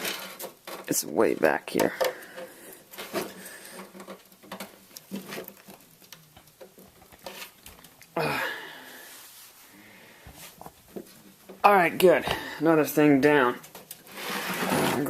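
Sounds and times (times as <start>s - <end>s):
cable scraping: 13.5s - 15.0s.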